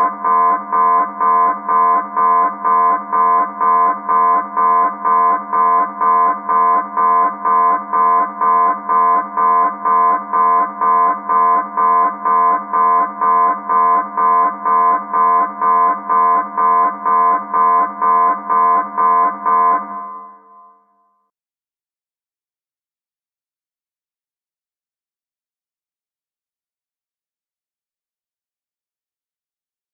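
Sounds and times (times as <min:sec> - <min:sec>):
pulsing alarm tone: 0:00.0 - 0:20.9.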